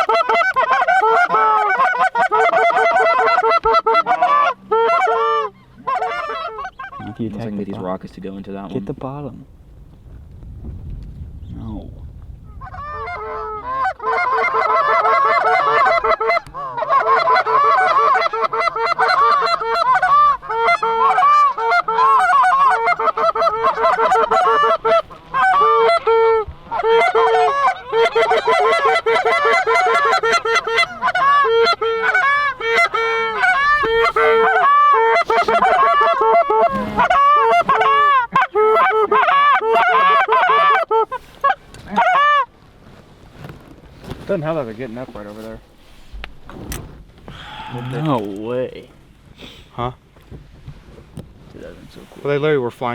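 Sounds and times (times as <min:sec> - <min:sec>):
goose calls honking: 0:00.0 - 0:07.9, 0:12.6 - 0:42.5.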